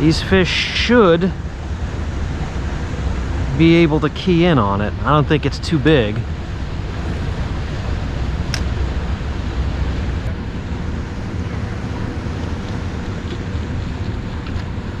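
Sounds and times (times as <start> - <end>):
wind buffeting microphone: 0.0 - 15.0
sharp click: 8.5 - 8.7.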